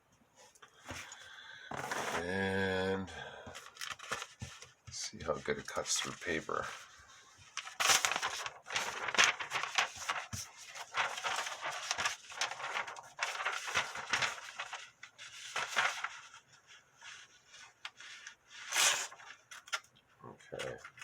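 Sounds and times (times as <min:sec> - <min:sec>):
blade tearing through paper: 0:07.6 - 0:16.3, 0:18.1 - 0:19.8.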